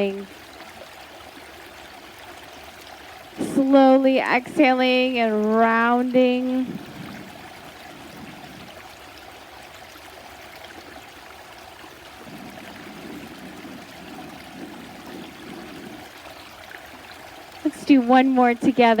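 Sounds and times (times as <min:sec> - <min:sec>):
stream flowing: 0:00.0 - 0:19.0.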